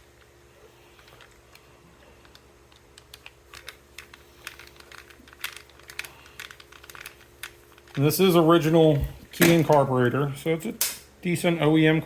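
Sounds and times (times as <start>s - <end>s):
small metal parts clicking: 2.2s - 8.4s.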